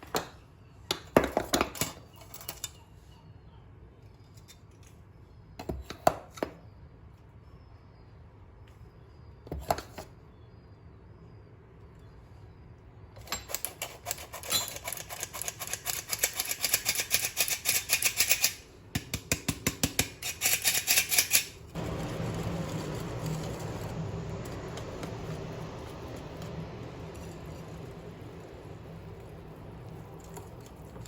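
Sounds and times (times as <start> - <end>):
steady noise: 21.8 - 31.0.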